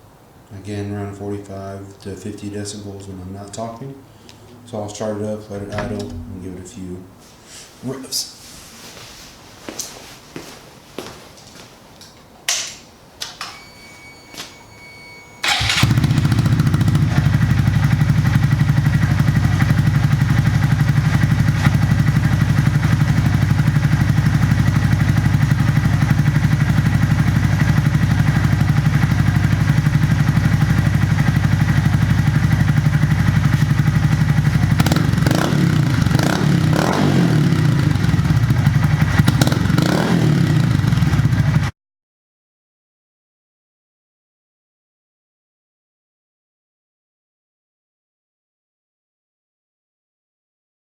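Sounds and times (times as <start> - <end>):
thump: 5.6 - 6.8
motorcycle engine idling and revving: 15.5 - 41.7.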